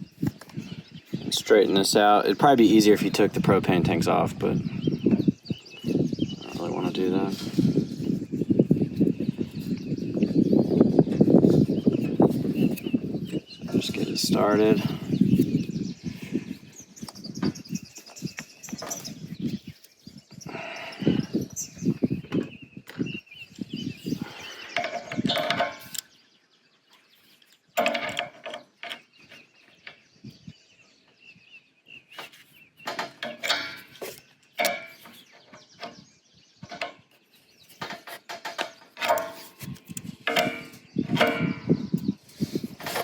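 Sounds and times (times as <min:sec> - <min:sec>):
metal fitting clicking and scraping: 0:24.6 - 0:26.1, 0:32.2 - 0:36.0, 0:37.8 - 0:43.0.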